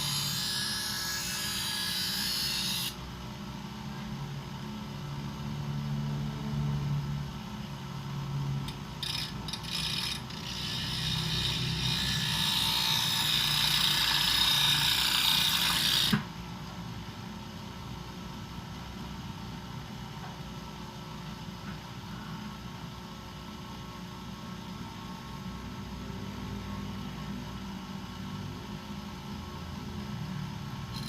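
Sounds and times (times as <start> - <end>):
blade grinding on wheel: 0.0 - 2.9, 8.7 - 16.1
bench grinder motor hum: 0.0 - 3.0, 8.7 - 16.2.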